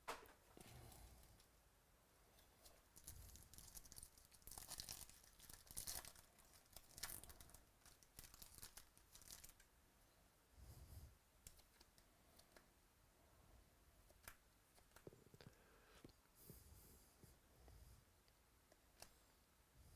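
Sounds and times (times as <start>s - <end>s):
wrappers tearing and crinkling: 3.0s - 9.6s.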